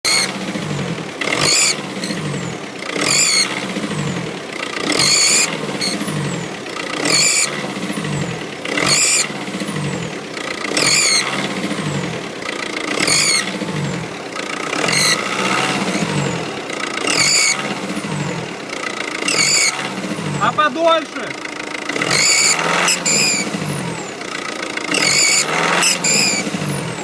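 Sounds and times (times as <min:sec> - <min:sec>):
car engine revving: 0:00.0 - 0:27.0
turbo whistle: 0:22.1 - 0:23.6.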